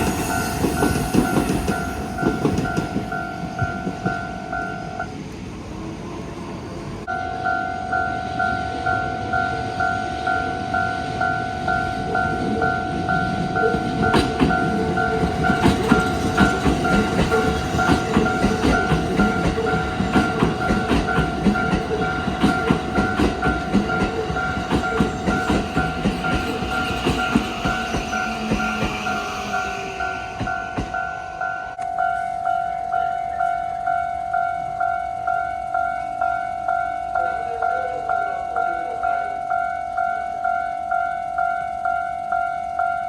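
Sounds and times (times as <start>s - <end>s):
train wheels clattering: 0.0s - 4.4s, 12.0s - 31.3s
level crossing bell ringing: 7.1s - 43.0s.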